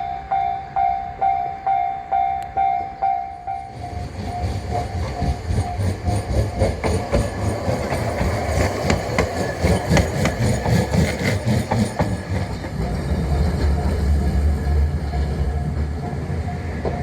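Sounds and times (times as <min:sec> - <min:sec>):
train rumbling: 0:00.0 - 0:17.0.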